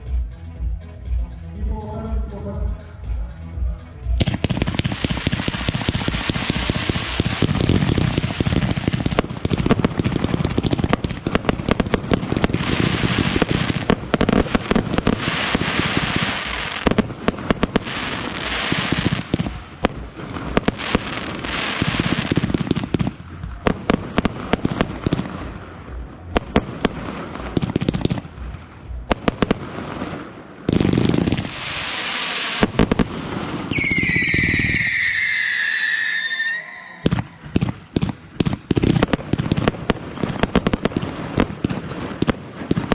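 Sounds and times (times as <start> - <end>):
fireworks bangs and crackling: 4.1 - 42.9
falling firework whistles: 31.1 - 32.8, 33.6 - 37.4.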